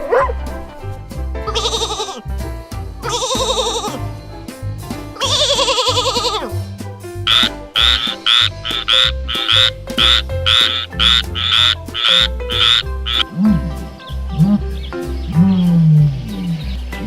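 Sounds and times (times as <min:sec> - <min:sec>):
background music: 0:00.0 - 0:17.0
sheep bleating: 0:01.5 - 0:02.2, 0:03.0 - 0:04.0, 0:05.2 - 0:06.5, 0:07.3 - 0:13.2
short rasping croaks: 0:07.3 - 0:14.6.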